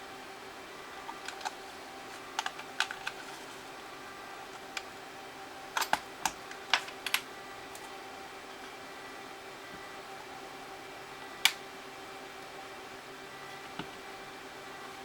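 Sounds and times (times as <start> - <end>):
plastic case clicking and snapping: 2.3 - 3.3, 5.8 - 7.2.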